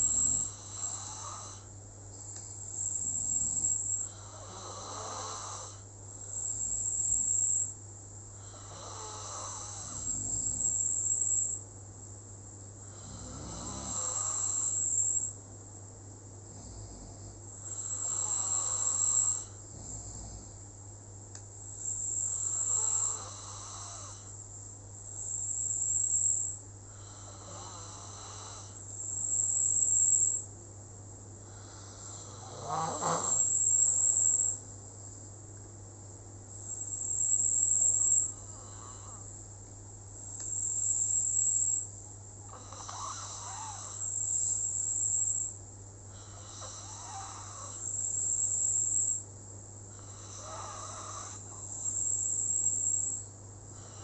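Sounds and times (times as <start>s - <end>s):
loud rasping snore: 0.0s - 1.7s, 3.0s - 5.8s, 8.5s - 10.8s, 12.9s - 14.9s, 16.5s - 20.6s, 22.2s - 24.3s, 31.6s - 34.5s, 42.5s - 44.1s, 46.2s - 47.9s, 50.0s - 52.2s.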